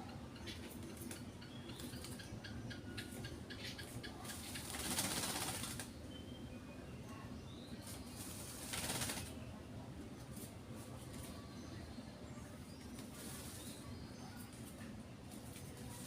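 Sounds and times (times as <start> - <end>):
bird chirping: 0.0 - 4.8.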